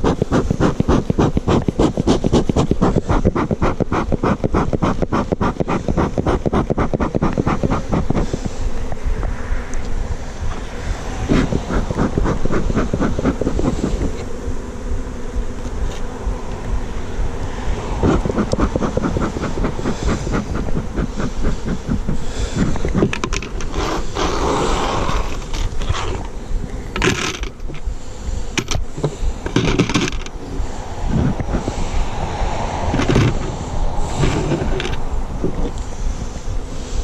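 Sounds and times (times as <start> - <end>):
honeybees buzzing: 0.0 - 37.0
wind rumble on microphone: 0.0 - 37.0
wooden hive parts knocking: 18.0 - 23.7, 28.6 - 30.4.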